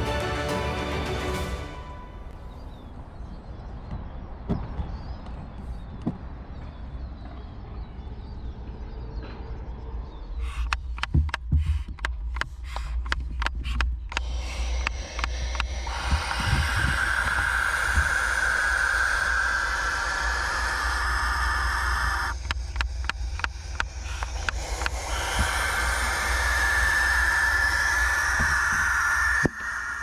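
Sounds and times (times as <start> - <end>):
owl sharp clicks: 10.4 - 30.0
owl hissing: 11.6 - 30.0.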